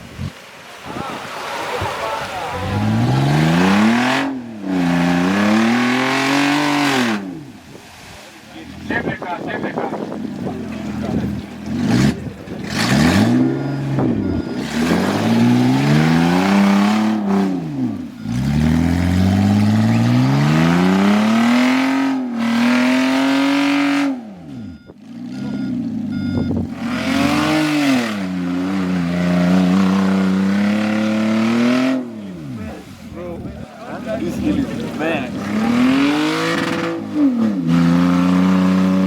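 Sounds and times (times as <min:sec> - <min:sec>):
engine revving hard: 0:02.6 - 0:07.5, 0:10.4 - 0:32.3, 0:34.2 - 0:39.0
short electronic beeps: 0:13.1 - 0:20.4, 0:24.2 - 0:27.5.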